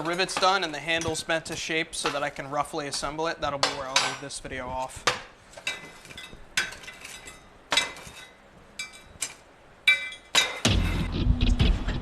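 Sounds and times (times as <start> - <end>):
background music: 10.6 - 12.0.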